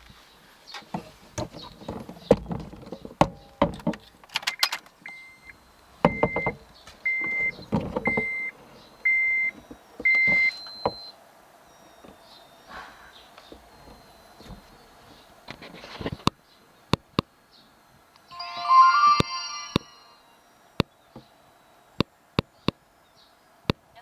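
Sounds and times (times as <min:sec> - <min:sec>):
handling clicks and knocks: 0:00.7 - 0:05.0, 0:06.0 - 0:08.4
car warning chime beeping: 0:01.6 - 0:15.6, 0:17.5 - 0:23.4.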